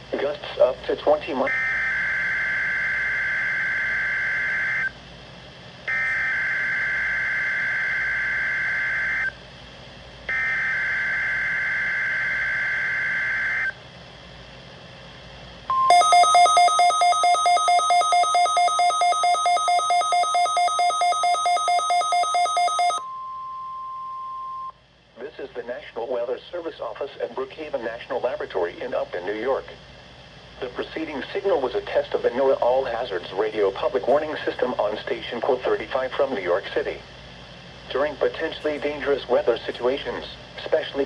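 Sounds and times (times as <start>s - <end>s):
rapid electronic alert beeping: 15.7s - 23.0s
steady alert tone: 15.7s - 23.0s.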